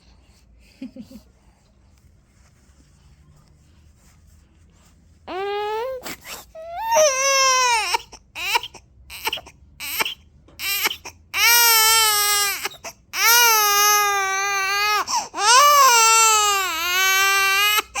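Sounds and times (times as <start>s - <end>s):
baby crying: 5.3s - 18.0s.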